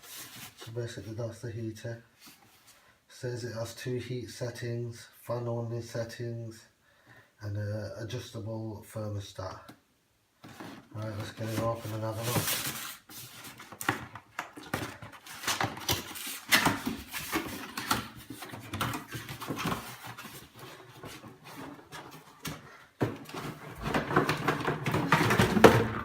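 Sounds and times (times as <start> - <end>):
cardboard and plastic packaging rustling: 0.0 - 1.0, 10.4 - 26.0
packaging scraping and knocks: 10.4 - 26.0.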